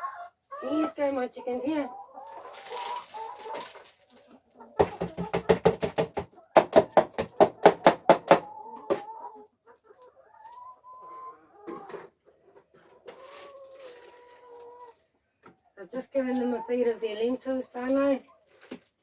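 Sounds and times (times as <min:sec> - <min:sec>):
soft drawn-out hen calls: 0:00.0 - 0:05.3, 0:08.4 - 0:17.1
hens clucking: 0:00.0 - 0:18.6.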